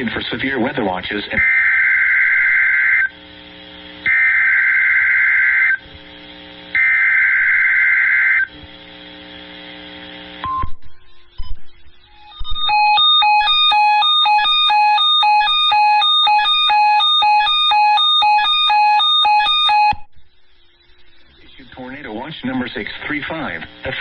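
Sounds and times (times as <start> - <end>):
electronic alarm beeping: 10.4 - 23.6.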